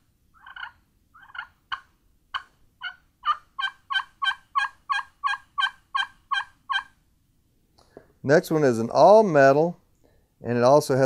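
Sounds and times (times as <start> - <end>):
turkey call clucks: 0.4 - 7.0
turkey call yelps: 0.4 - 7.0.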